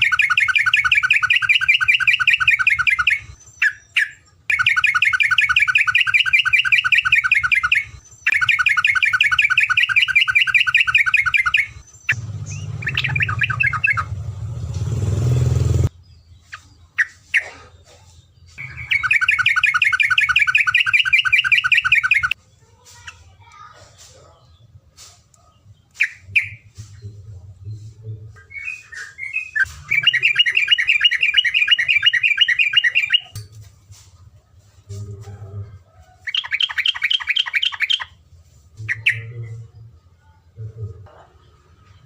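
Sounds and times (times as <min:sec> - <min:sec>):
songbird trilling: 0:00.0 - 0:14.2, 0:18.6 - 0:22.4, 0:28.4 - 0:33.4, 0:36.3 - 0:38.1
rushing noise with low rumble: 0:12.2 - 0:15.9.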